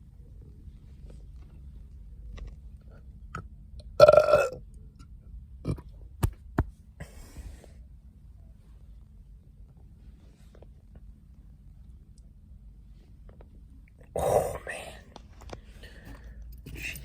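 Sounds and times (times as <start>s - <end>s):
man burping loudly: 4.0s - 4.6s.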